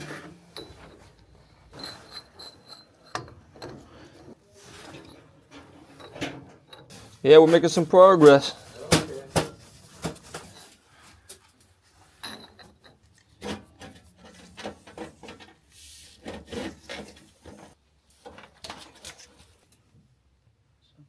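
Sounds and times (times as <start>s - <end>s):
scraping rub: 13.5s - 17.8s.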